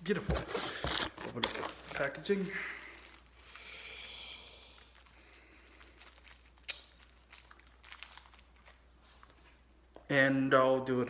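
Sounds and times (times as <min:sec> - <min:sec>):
packaging crinkling: 0:00.2 - 0:03.5, 0:04.8 - 0:09.6
small packaging clicks: 0:05.0 - 0:08.8.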